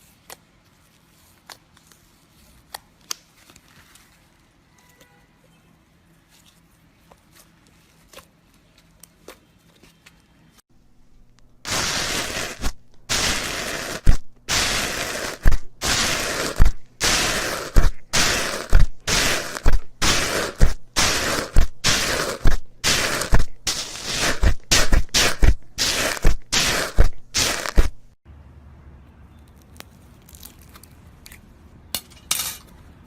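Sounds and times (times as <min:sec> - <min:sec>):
crunchy material being crushed: 0:11.6 - 0:28.2.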